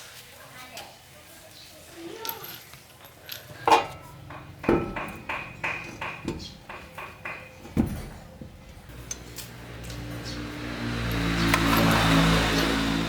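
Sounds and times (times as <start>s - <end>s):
metal tools clinking: 2.1s - 13.0s
sharp metal knocks: 3.7s - 9.2s.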